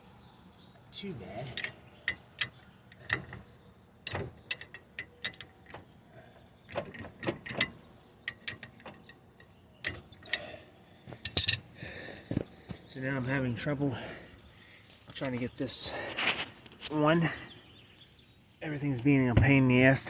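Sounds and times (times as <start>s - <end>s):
metallic clicks of hand tools: 1.6s - 3.4s, 4.1s - 6.0s, 6.7s - 10.5s, 11.2s - 11.6s.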